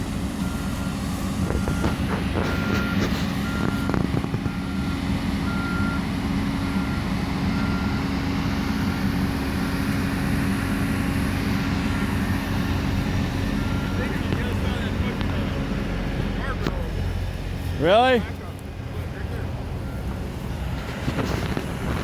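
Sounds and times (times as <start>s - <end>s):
construction machinery diesel drone: 0.0s - 22.0s
backup alarm beeping: 0.4s - 8.1s, 13.0s - 15.2s, 19.8s - 20.2s.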